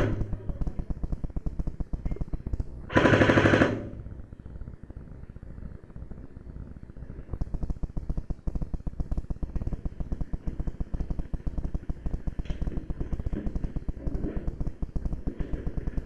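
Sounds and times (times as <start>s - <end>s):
airsoft gun firing full-auto: 2.9s - 4.0s.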